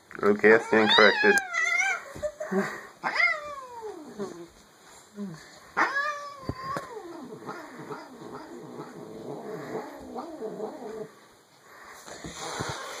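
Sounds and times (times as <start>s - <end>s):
cat yowling: 0.6s - 2.0s.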